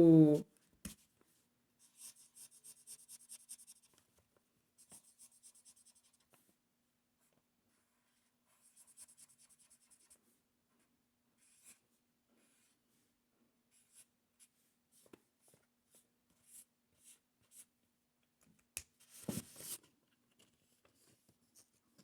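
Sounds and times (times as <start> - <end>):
pencil scratching on paper: 1.9 - 3.9, 4.8 - 6.2, 8.5 - 10.2.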